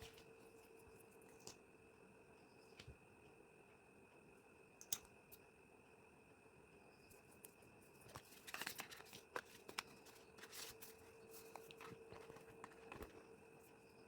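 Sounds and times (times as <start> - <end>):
packaging crinkling and rustling: 8.1 - 13.2.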